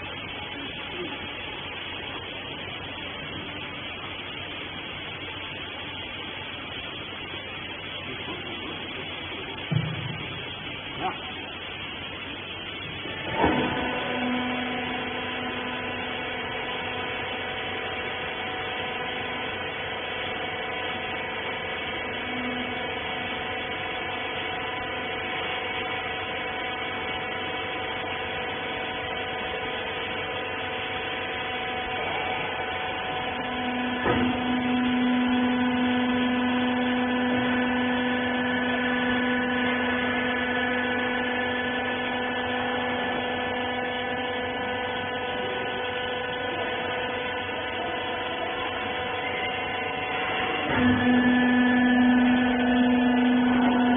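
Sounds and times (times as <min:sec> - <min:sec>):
hydraulic pump whining hum: 0:00.0 - 0:53.9
machine clunk: 0:34.0 - 0:34.4.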